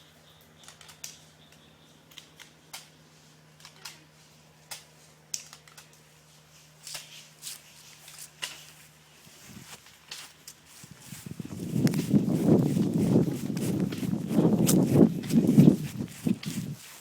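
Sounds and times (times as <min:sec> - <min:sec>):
faint steady hum: 0:00.0 - 0:17.0
sharp light clicks and crackles: 0:00.4 - 0:03.0, 0:03.6 - 0:06.1, 0:08.0 - 0:08.8, 0:09.8 - 0:10.6.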